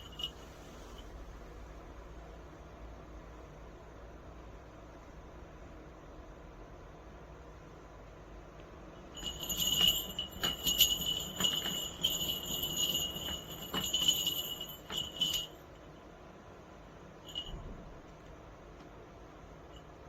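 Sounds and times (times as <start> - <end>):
small bell jingling: 0.0 - 1.2, 9.0 - 16.0, 17.2 - 17.9.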